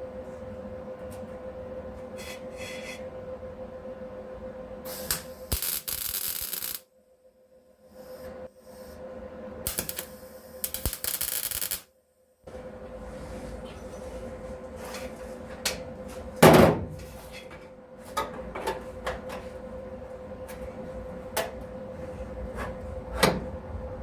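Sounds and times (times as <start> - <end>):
steady hum: 0.0 - 6.8, 7.7 - 24.0
welding crackle: 5.0 - 6.8, 9.7 - 11.9.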